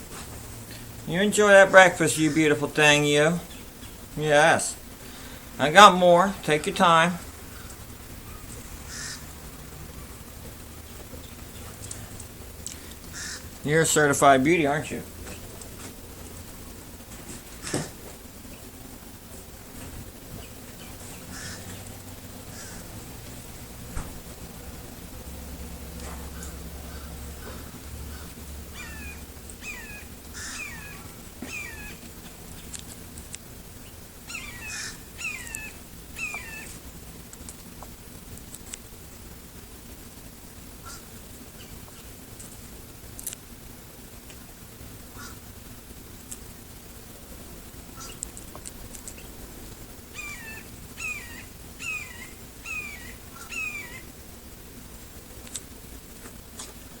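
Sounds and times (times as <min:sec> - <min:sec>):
bird harsh falling calls: 0:01.7 - 0:04.0, 0:06.6 - 0:12.2, 0:12.8 - 0:14.0, 0:20.3 - 0:23.0, 0:26.0 - 0:32.7, 0:33.8 - 0:36.8, 0:45.1 - 0:45.5, 0:47.9 - 0:48.2, 0:50.1 - 0:54.1.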